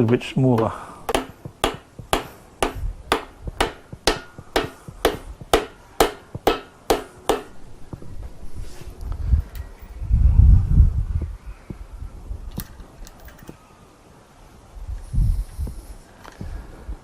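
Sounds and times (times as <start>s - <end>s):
rubber mallet tapping metal: 0.0s - 7.6s.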